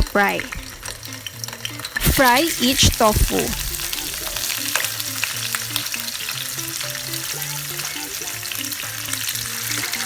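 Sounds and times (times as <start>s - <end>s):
quiet background music: 0.0s - 10.0s
tofu sizzling in hot oil: 0.0s - 10.0s.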